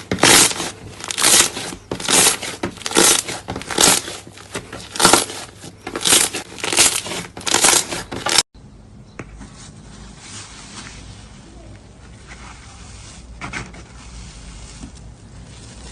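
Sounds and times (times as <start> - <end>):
slime squishing: 0.0 - 8.4.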